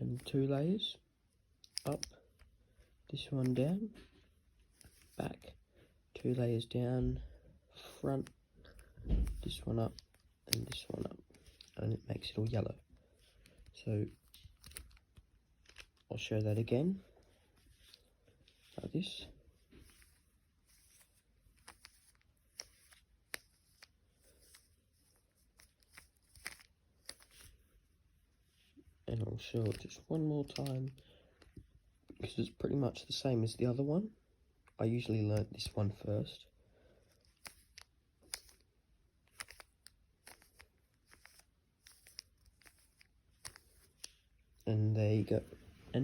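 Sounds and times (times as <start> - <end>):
puzzle cube plastic clicks: 1.6 - 2.5, 8.3 - 12.6, 13.3 - 16.1, 19.8 - 27.5, 37.0 - 44.2.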